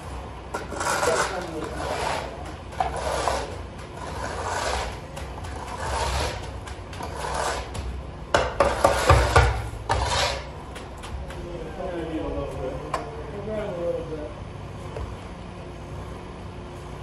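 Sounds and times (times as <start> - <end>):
hand tool rubbing concrete: 0.0 - 11.7.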